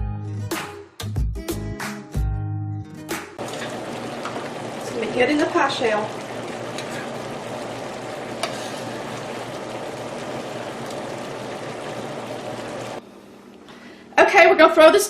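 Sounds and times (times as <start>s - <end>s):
pie filling bubbling in pot: 3.4s - 13.0s.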